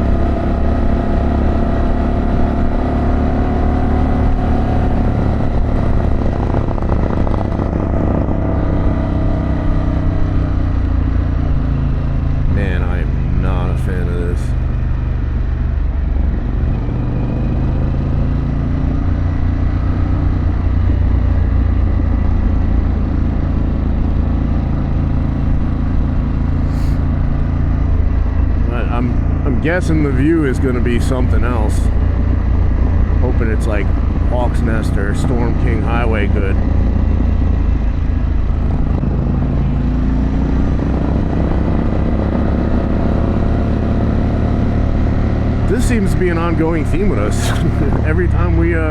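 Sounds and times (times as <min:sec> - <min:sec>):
motorcycle engine running: 0:00.0 - 0:48.9.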